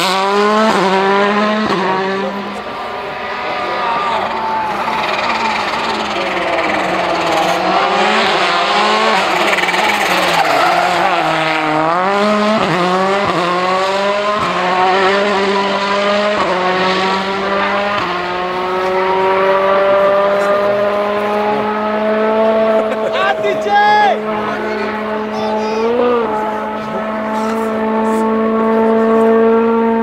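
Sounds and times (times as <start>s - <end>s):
rally car engine upshifting: 0.0s - 30.0s
tyres squealing: 9.2s - 11.4s.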